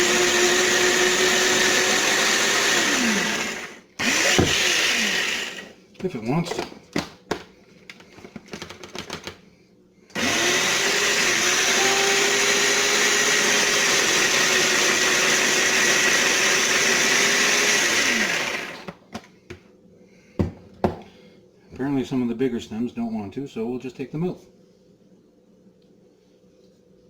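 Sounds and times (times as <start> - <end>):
food processor motor running: 0.0 - 5.7, 10.1 - 18.9.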